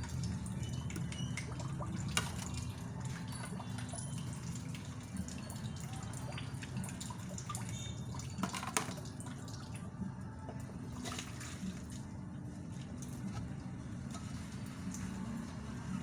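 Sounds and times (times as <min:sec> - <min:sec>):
water running in a sink: 0:00.0 - 0:16.0
dishes clicking and knocking: 0:08.4 - 0:09.0.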